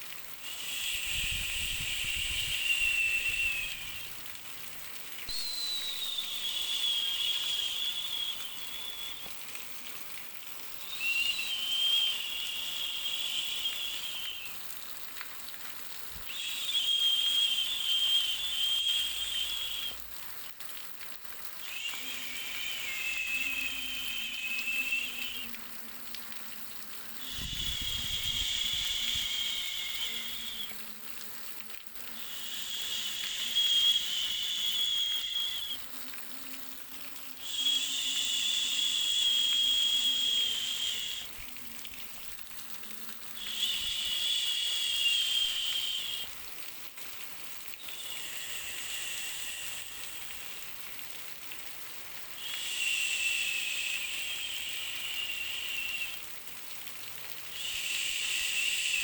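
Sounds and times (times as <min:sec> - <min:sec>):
white noise hiss bursts: 0:00.0 - 0:14.8, 0:21.6 - 0:25.8, 0:27.0 - 0:31.3, 0:32.0 - 0:35.8, 0:37.3 - 0:42.3, 0:42.9 - 0:46.4, 0:47.8 - 0:51.0, 0:52.3 - 0:56.3, 0:57.5 - 0:59.0.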